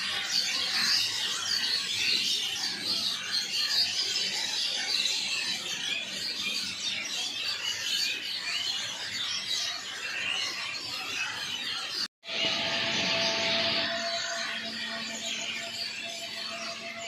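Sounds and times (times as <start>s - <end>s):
many small birds chirping: 0.0s - 17.0s.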